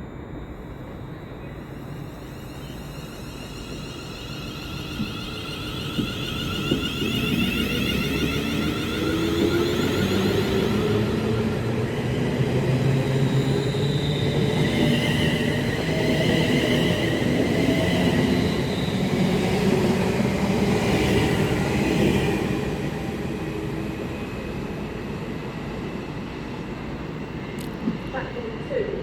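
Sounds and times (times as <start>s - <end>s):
electric train pulling away: 0.0s - 29.0s
traction motor whine: 3.1s - 17.3s.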